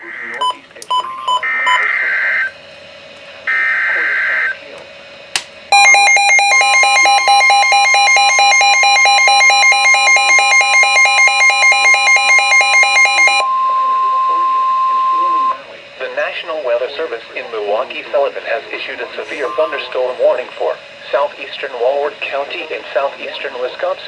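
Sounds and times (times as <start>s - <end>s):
rapid pulsing beep: 5.7s - 15.6s, 19.3s - 20.4s
steady warning alarm tone: 5.7s - 15.7s, 18.7s - 20.9s
warbling digital header tones: 5.8s - 15.6s, 19.3s - 20.5s.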